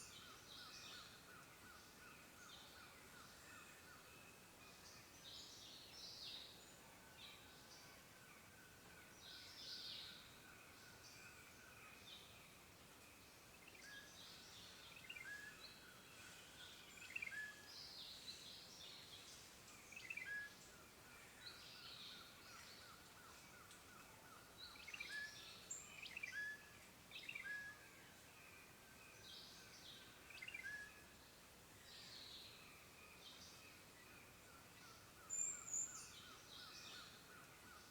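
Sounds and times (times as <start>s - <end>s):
soft outdoor hiss: 0.0s - 37.9s.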